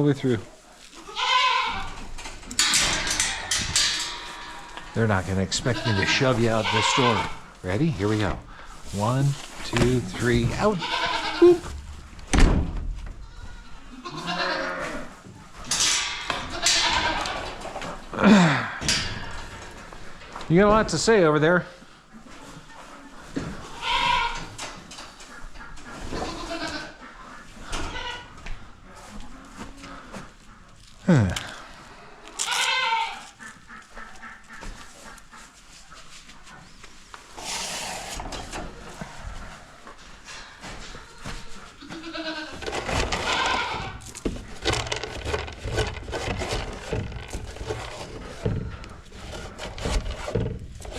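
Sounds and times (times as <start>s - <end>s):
rustling: 0.2s - 18.1s, 28.9s - 50.9s
goat bleating: 1.0s - 2.0s, 5.6s - 7.5s, 10.4s - 11.7s, 13.2s - 15.1s, 16.5s - 17.5s, 23.7s - 24.5s, 26.2s - 27.0s, 32.4s - 33.4s, 41.8s - 42.6s, 43.2s - 44.0s.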